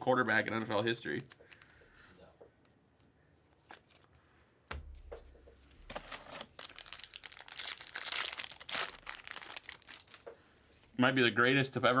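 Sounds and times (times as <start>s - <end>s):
soft knock: 4.7s - 5.6s
foil wrapper tearing and crinkling: 5.9s - 10.3s.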